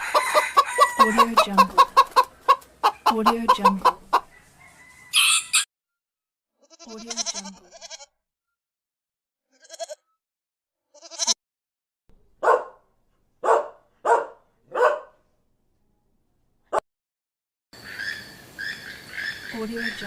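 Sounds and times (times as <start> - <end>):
dog barking: 12.4 - 15.3.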